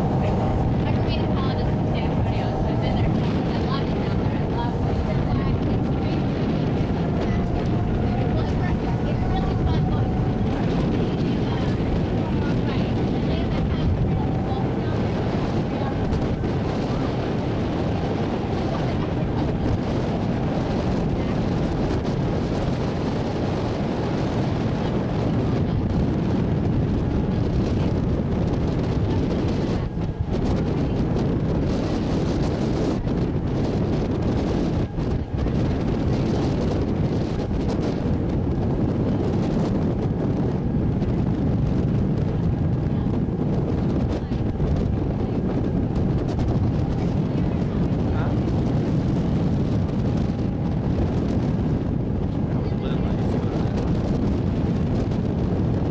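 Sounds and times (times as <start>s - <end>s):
water rushing: 0.0s - 37.9s
boat engine: 0.0s - 55.9s
wind buffeting microphone: 0.0s - 55.9s.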